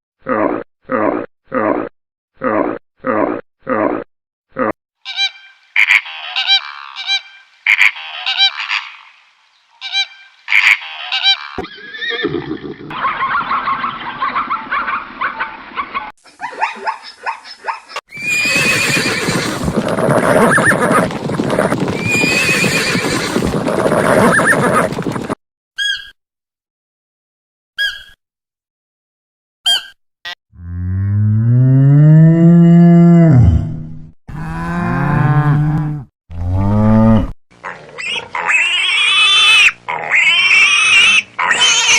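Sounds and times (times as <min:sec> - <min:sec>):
animal calls: 0:05.0 - 0:09.2, 0:09.8 - 0:25.0, 0:37.6 - 0:41.9.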